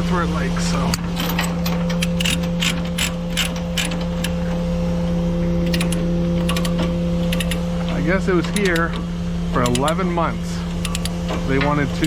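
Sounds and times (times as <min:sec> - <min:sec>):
engine hum: 0:00.2 - 0:12.0
ratchet clicking: 0:01.9 - 0:04.6, 0:05.6 - 0:07.9, 0:08.5 - 0:12.0.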